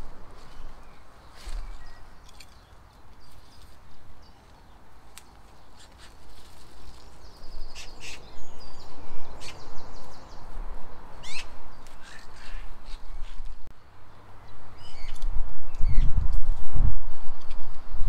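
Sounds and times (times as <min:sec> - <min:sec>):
birds chirping and trilling: 0:00.0 - 0:16.2
open air hum: 0:00.0 - 0:18.0
light clicks and rustles: 0:01.3 - 0:07.2.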